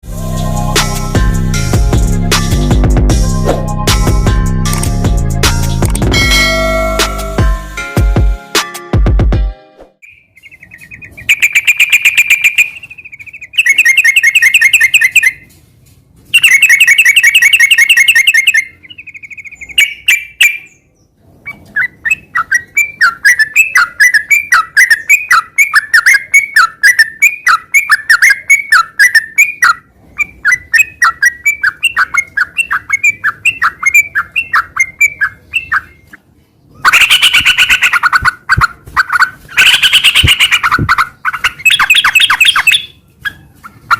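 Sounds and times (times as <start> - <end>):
bird singing trills and chatter: 10.0 - 15.5, 16.3 - 43.9.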